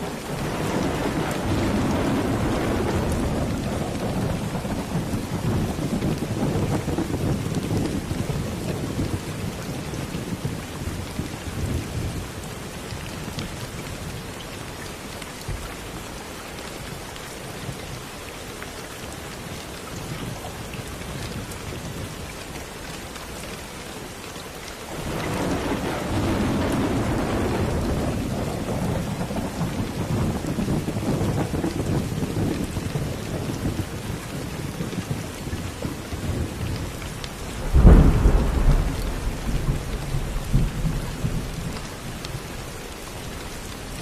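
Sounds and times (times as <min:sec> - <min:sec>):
steady rain falling: 0:00.0 - 0:44.0
rolling thunder: 0:00.2 - 0:12.4, 0:24.9 - 0:42.7.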